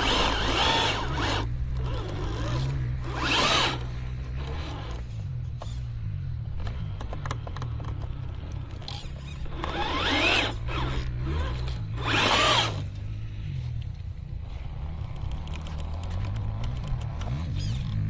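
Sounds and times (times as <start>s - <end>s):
toy car electric motor whining: 0.0s - 5.9s, 8.8s - 13.0s.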